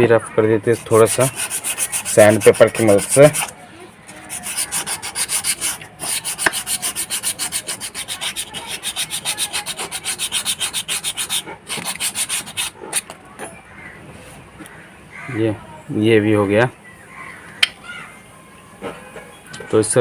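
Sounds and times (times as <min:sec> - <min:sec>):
sandpaper rubbing brake lining: 0:00.6 - 0:03.6, 0:04.2 - 0:13.1.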